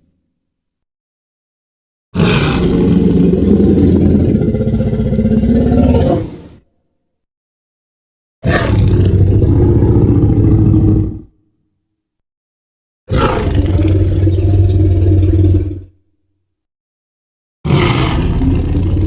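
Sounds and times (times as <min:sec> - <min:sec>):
deep dinosaur roars: 0:02.2 - 0:06.6, 0:08.4 - 0:11.3, 0:13.1 - 0:16.0, 0:17.7 - 0:19.0.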